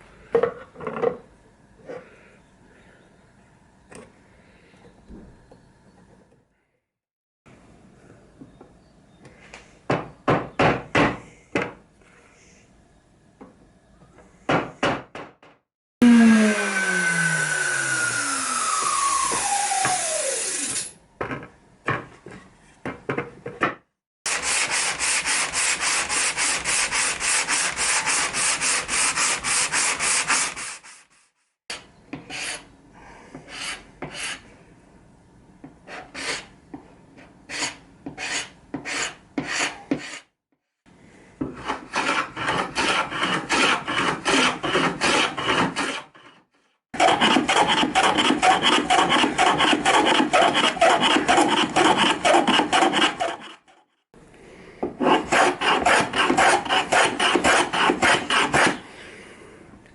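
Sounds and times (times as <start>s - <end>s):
motor winding down: 16.0s - 20.9s
sanding strokes on wood: 24.3s - 31.3s.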